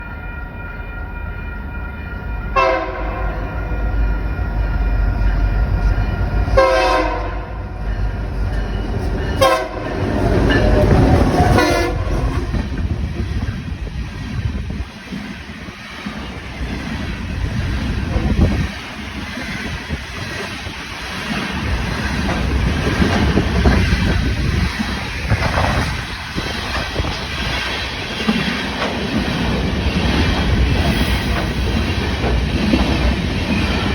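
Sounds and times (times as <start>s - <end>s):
locomotive horn: 2.6s - 3.8s, 6.5s - 7.7s, 9.4s - 12.6s
train wheels clacking on rails: 4.1s - 33.9s.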